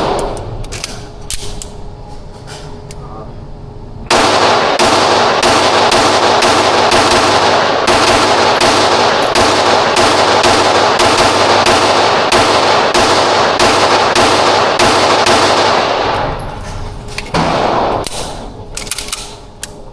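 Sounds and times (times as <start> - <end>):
rapid pistol shots: 0.0 - 0.4, 4.1 - 16.3, 17.4 - 19.4.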